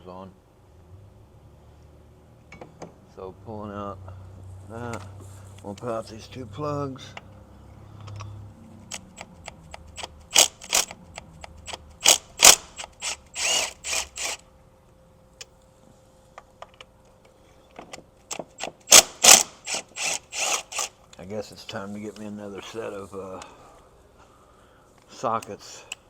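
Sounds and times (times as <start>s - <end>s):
ratchet wrench clicking: 8.9s - 14.4s, 18.6s - 21.0s.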